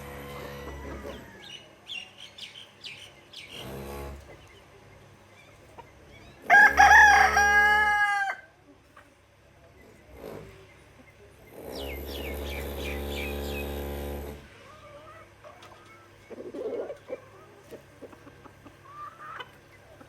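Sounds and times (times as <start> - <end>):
chicken clucks and chirps: 0.0 - 13.8, 14.5 - 20.0
rooster crowing: 0.1 - 1.7, 6.5 - 8.5.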